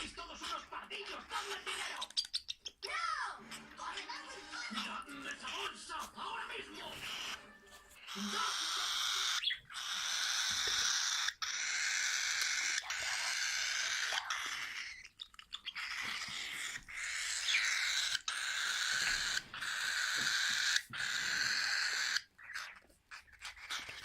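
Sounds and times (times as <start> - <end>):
baby parrots hissing begging noise: 6.9 - 15.1, 15.7 - 24.0.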